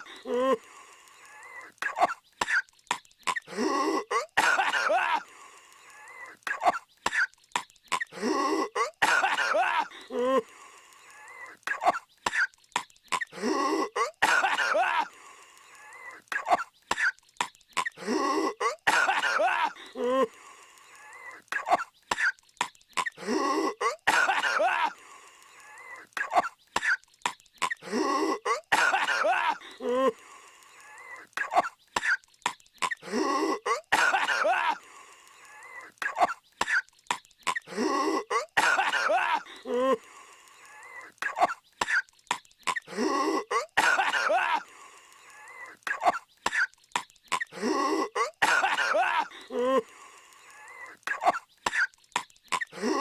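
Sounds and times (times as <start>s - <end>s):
cartoon character coughing: 1.8s - 2.6s, 3.3s - 5.2s, 7.9s - 10.4s, 13.1s - 15.1s, 16.4s - 17.2s, 17.8s - 20.3s, 21.6s - 22.4s, 23.0s - 25.0s, 26.2s - 27.0s, 27.6s - 30.2s, 31.4s - 32.2s, 32.8s - 34.8s, 36.0s - 36.8s, 37.5s - 40.0s, 41.2s - 42.0s, 42.7s - 44.6s, 47.3s - 49.8s.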